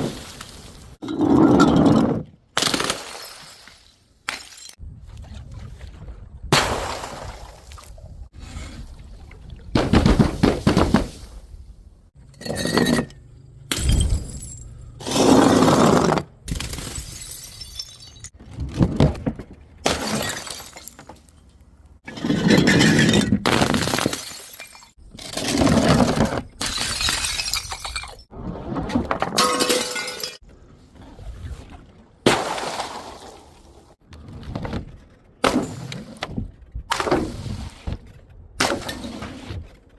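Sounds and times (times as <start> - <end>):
glass bottles smashing: 16.6 - 18.3, 19.9 - 21.1, 22.3 - 25.0, 26.6 - 28.3, 29.3 - 30.4
glass shards clattering: 29.4 - 30.4.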